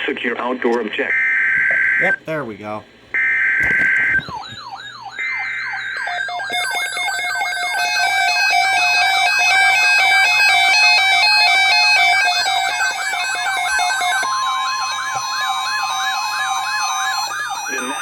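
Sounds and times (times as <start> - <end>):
stepping beeps: 3.2 - 7.2
electronic siren sweeps: 3.2 - 18.0.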